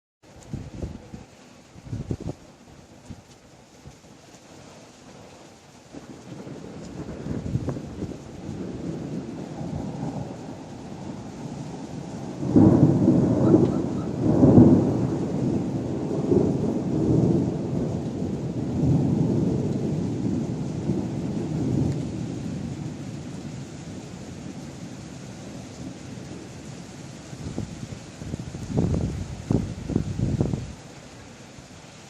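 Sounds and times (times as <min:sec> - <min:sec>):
heavy rain: 0:00.2 - 0:32.0
thunder clap and rumble: 0:05.2 - 0:24.8, 0:25.4 - 0:30.8.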